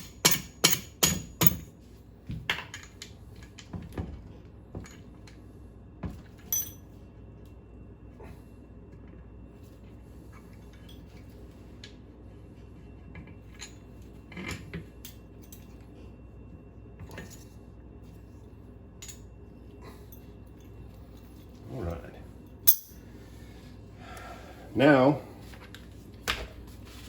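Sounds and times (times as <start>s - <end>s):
metallic clinks of hand tools: 6.5s - 6.8s, 22.7s - 23.0s.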